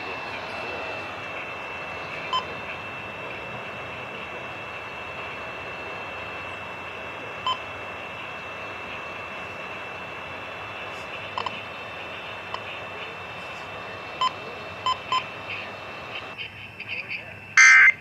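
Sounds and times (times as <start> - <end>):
faint high-pitched whine: 0.0 - 18.0
radio hiss: 0.0 - 18.0
short electronic beeps: 17.6 - 18.0.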